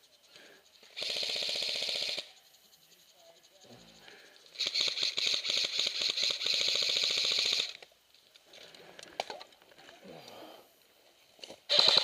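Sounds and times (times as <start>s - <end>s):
airsoft gun full-auto burst: 0.9s - 2.4s, 4.6s - 7.8s, 11.7s - 12.0s.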